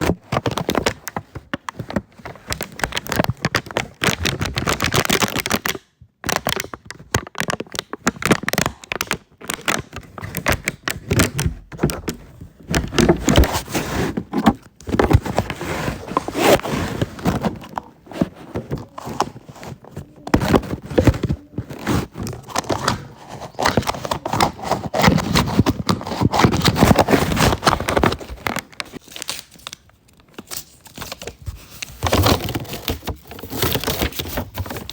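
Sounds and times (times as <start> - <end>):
plastic packaging crinkling: 0.0 - 34.9
slime crackles and squelches: 14.3 - 34.9.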